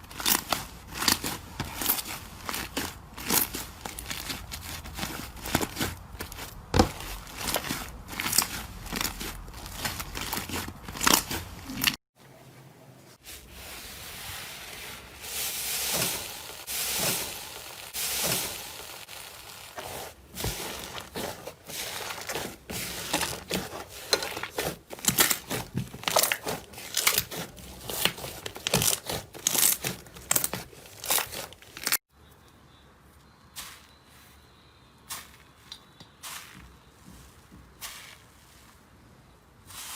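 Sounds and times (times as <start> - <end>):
slime crackling and popping: 15.3 - 32.0.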